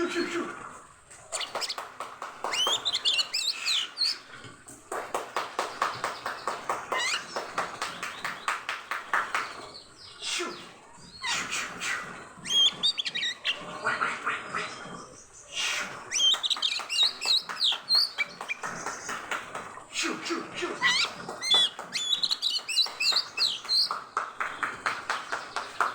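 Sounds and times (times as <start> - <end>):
bird whistling and trilling: 2.4 - 4.2, 6.9 - 7.5, 11.1 - 14.8, 15.5 - 19.2, 20.8 - 24.0
bird rattling chatter: 16.1 - 19.3.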